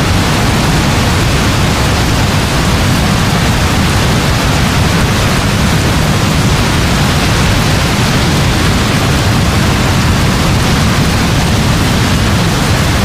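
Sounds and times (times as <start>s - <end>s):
heavy rain falling: 0.0s - 13.0s.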